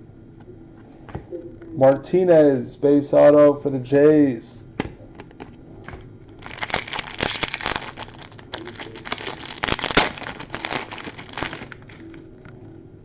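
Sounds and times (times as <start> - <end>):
plastic wrapper crinkling and tearing: 6.3 - 12.3.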